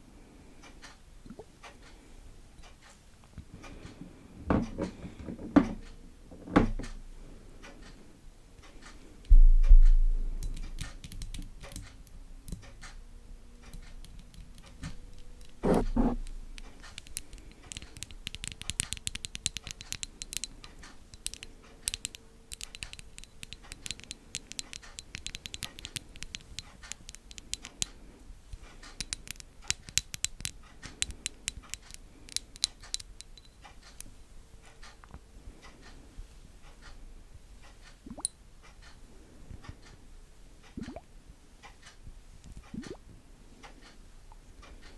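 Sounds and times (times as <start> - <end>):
tapping clicking and scratching: 14.2 - 27.9.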